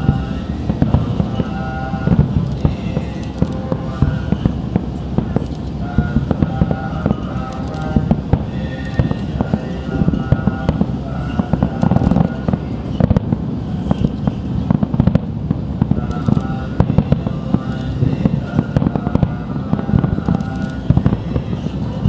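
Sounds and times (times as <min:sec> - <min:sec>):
firework crackling bangs: 0:00.0 - 0:22.0
firework shell bursts: 0:00.0 - 0:22.0.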